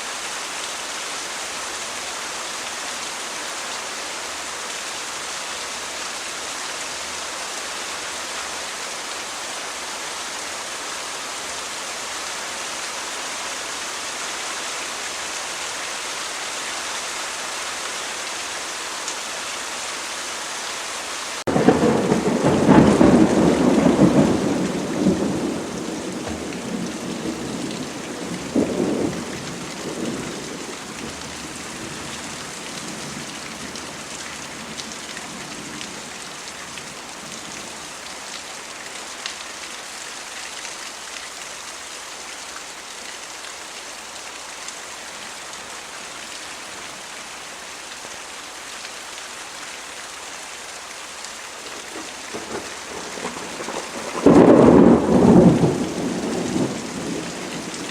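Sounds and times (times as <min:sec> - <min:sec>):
rain hissing: 0:00.0 - 0:57.9
thunder rumbling: 0:21.5 - 0:31.2, 0:52.3 - 0:57.8.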